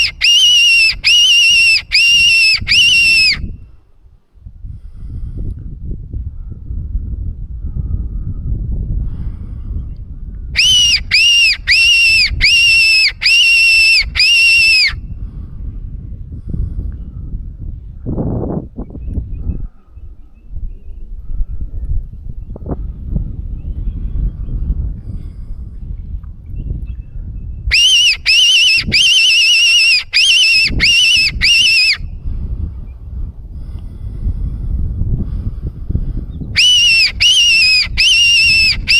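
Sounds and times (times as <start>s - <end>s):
fox call squeals: 0.0s - 3.4s, 10.6s - 15.0s, 27.7s - 32.0s, 36.6s - 38.9s
wind rumble on microphone: 0.0s - 38.9s.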